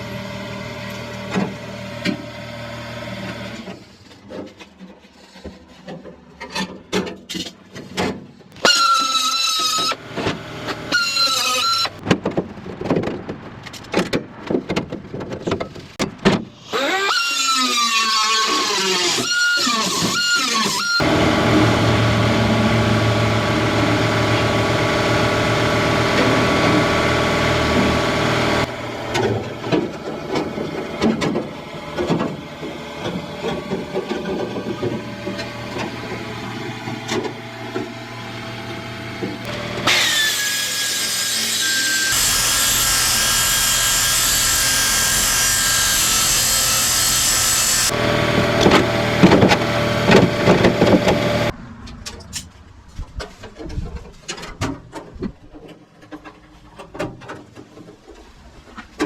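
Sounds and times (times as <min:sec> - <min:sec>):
clatter and knocks: 0:12.0 - 0:16.5
power tool motor hum: 0:16.7 - 0:51.5.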